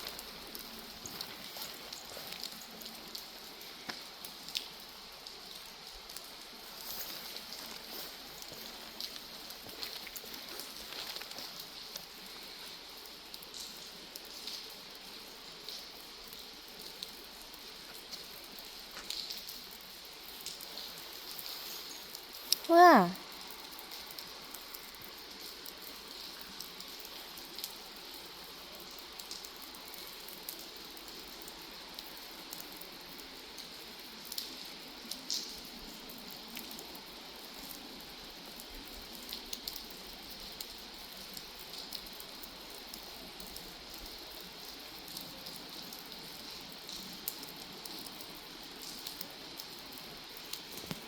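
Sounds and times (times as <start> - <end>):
steady rainfall: 0.0 - 51.0
ticks of raindrops: 0.0 - 51.0.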